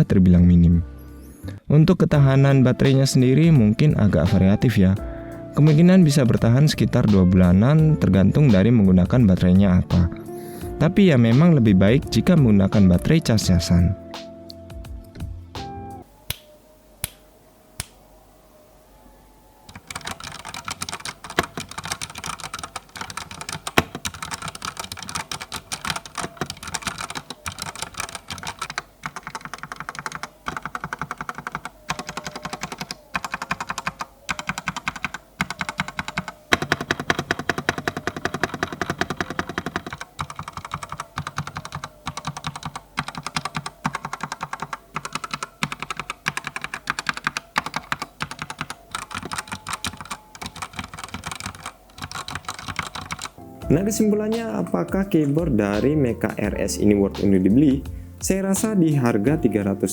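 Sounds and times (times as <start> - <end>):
mechanical keyboard typing: 19.7 - 53.4.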